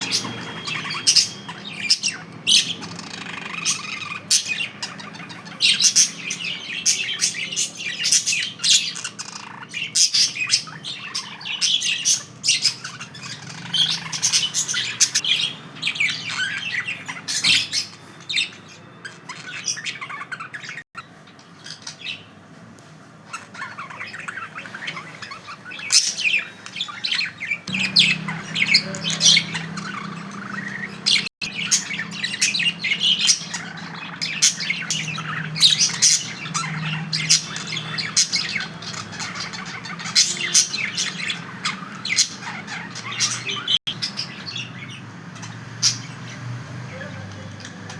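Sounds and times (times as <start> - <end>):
budgerigars chirping and squawking: 0.0 - 22.4, 23.2 - 47.9.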